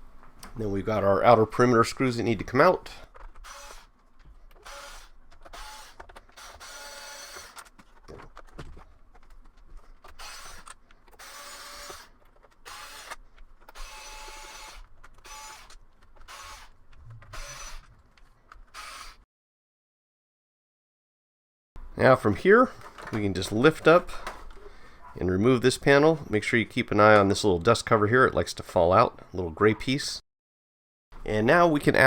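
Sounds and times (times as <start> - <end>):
electric screwdriver bursts: 3.4 - 3.9, 4.6 - 7.7, 10.1 - 17.9, 18.7 - 19.2.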